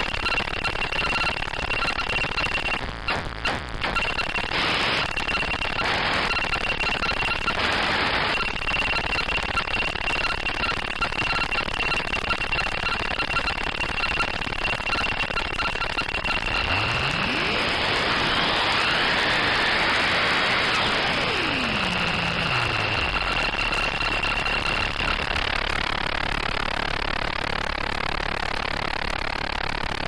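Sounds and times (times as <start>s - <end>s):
low pulsing beep: 0.0s - 25.8s
high steady synth tone: 13.5s - 25.7s.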